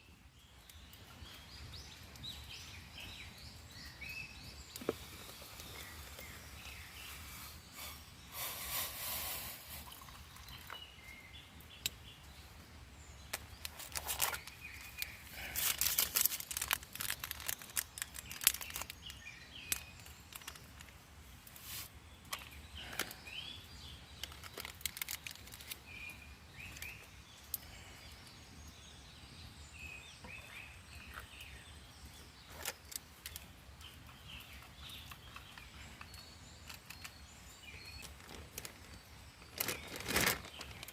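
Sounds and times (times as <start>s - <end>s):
birds chirping: 0.0s - 40.9s
close rustles and clicks: 13.3s - 23.1s, 36.6s - 40.9s.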